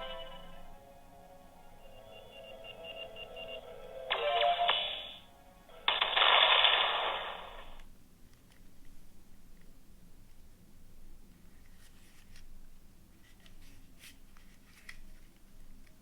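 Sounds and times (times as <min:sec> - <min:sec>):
phone ringtone beeps: 0:00.0 - 0:00.8, 0:01.6 - 0:05.3
noisy loud bursts: 0:05.7 - 0:07.8.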